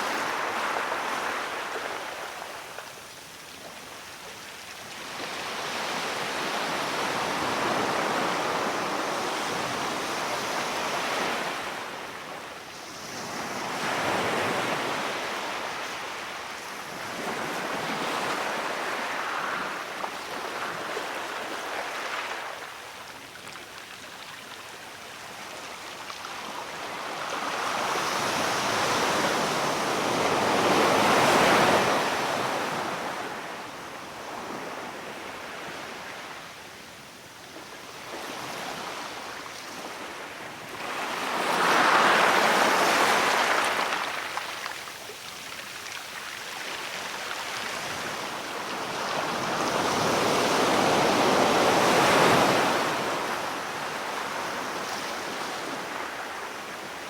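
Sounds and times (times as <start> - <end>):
sea waves washing onto shore: 40.1 - 57.0.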